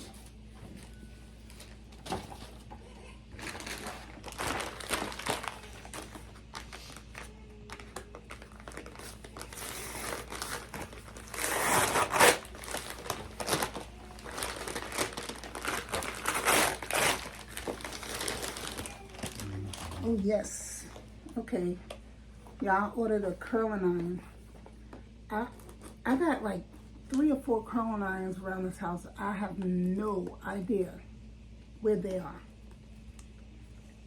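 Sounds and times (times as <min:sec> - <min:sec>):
packaging crinkling and tearing: 0:03.3 - 0:20.2.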